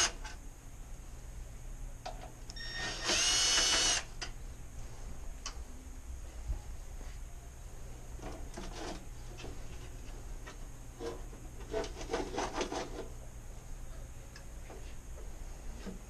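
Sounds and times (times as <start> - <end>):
parts rubbing and scraping: 8.2 - 10.2, 10.9 - 13.2.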